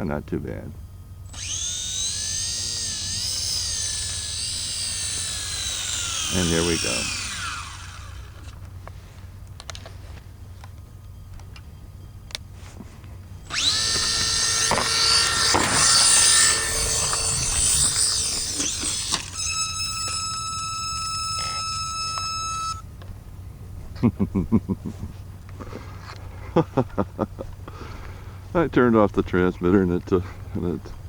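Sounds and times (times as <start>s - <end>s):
electric motor high whine: 0.9s - 23.4s.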